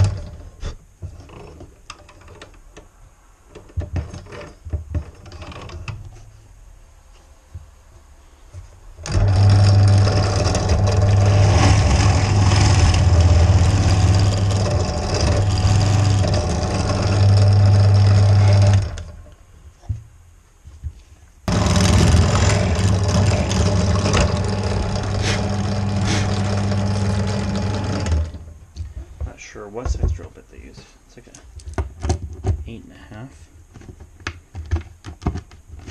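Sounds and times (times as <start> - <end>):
electric drill running under load: 9.0 - 19.1, 21.5 - 28.5.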